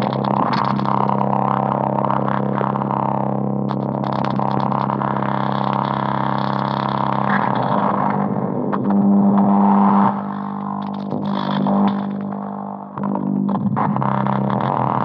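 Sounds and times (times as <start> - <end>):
buzzing electronic drone: 0.0 - 15.0.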